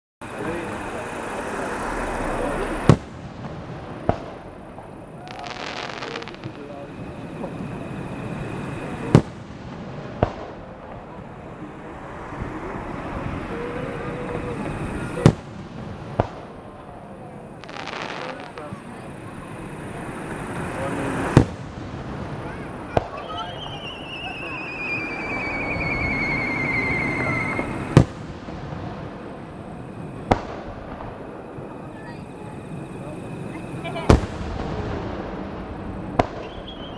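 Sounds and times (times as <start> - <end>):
firework bangs: 0.2 - 36.9
fireworks crackling: 0.2 - 36.9
firework shells bursting: 0.5 - 11.5
firework whistle: 5.1 - 9.6, 12.2 - 15.5, 22.4 - 28.3, 36.1 - 36.9.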